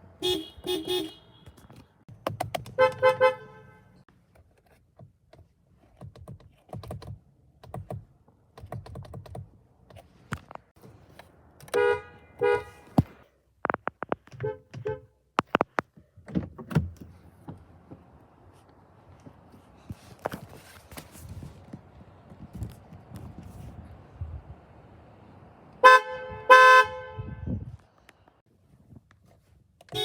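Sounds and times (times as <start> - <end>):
car horns honking: 0.1 - 1.9, 2.7 - 4.0, 11.6 - 13.2, 14.3 - 15.2, 25.8 - 27.7
clicks and knocks: 12.9 - 18.1.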